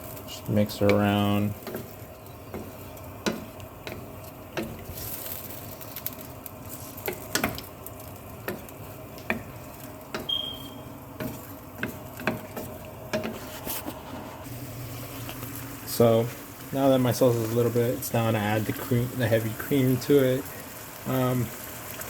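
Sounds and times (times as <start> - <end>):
utensil scraping a pan: 0.0 - 6.0, 8.4 - 15.4
sauce sizzling: 0.0 - 22.0
brief high squeak: 10.3 - 10.8.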